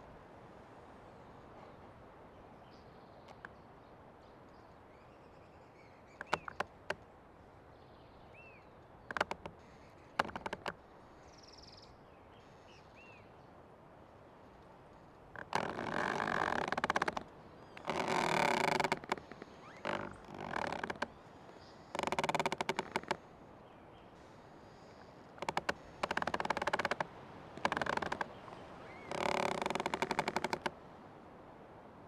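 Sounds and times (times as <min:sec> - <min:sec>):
old tree creaking: 0:06.1 - 0:07.0, 0:09.0 - 0:10.8, 0:15.1 - 0:23.5, 0:24.2 - 0:30.8.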